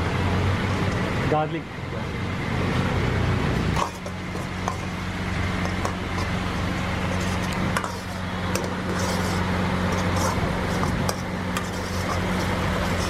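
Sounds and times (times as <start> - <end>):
low mechanical hum: 0.0 - 13.0.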